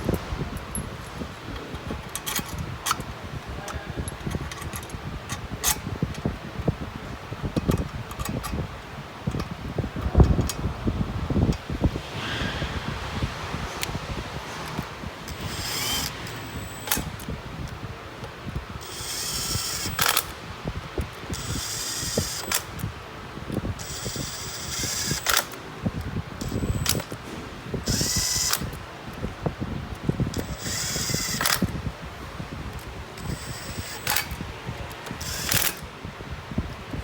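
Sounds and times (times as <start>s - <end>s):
steady low hum: 0.0s - 37.0s
power tool whirring: 14.5s - 17.3s, 18.8s - 20.4s, 21.3s - 22.9s, 23.8s - 25.6s, 26.4s - 28.8s, 30.1s - 31.8s, 32.8s - 35.9s
sharp clicks: 32.8s - 35.9s.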